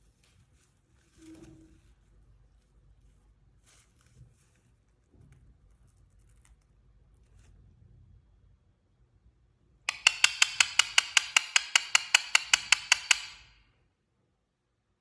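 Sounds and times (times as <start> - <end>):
parrot clicking rapidly: 9.9 - 13.6.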